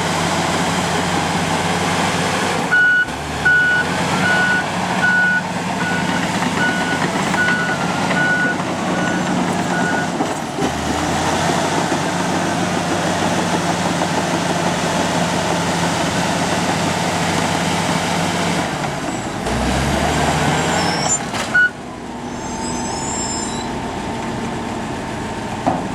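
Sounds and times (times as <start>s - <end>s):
bulldozer diesel engine running: 0.0s - 25.9s
reversing alarm beeping: 2.7s - 10.2s, 20.8s - 23.7s.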